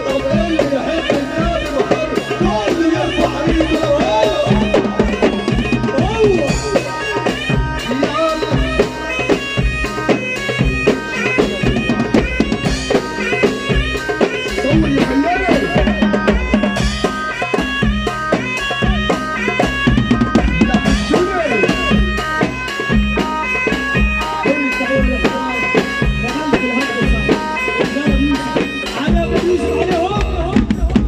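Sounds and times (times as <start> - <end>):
steady drum beat: 0.0 - 31.0.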